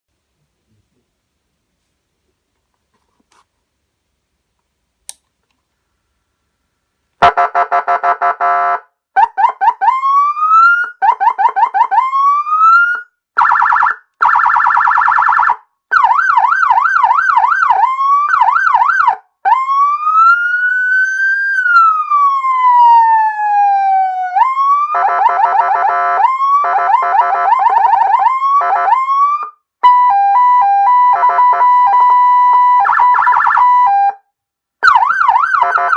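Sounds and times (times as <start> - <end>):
click: 4.6 - 5.6
electronic police siren: 9.2 - 34.2, 34.8 - 35.9.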